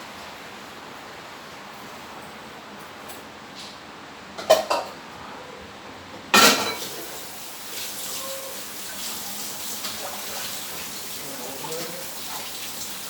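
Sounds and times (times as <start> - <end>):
water running: 6.4 - 13.0.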